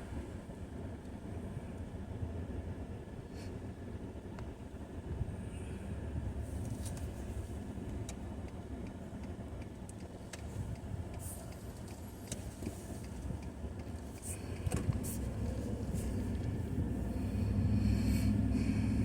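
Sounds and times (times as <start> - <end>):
car road rumble from inside: 0.0 - 19.0
light ticks and clicks: 7.8 - 15.0.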